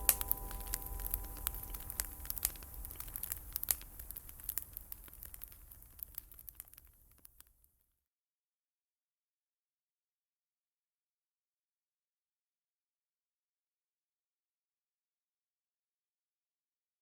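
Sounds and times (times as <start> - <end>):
ringing musical note: 0.0 - 2.8
wood fire crackling: 0.0 - 7.7.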